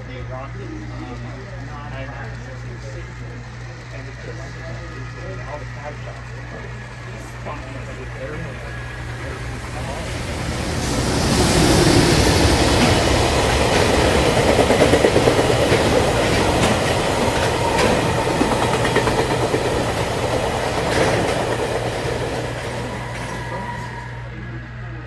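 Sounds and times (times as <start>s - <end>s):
train rolling past: 0.0s - 25.0s
wheels clicking over rail joints: 11.9s - 23.3s.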